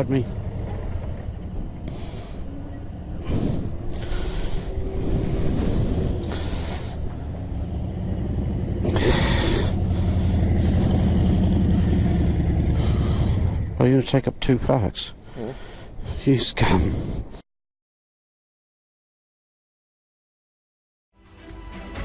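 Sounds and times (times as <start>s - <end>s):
motorcycle engine rumbling: 0.0s - 14.5s.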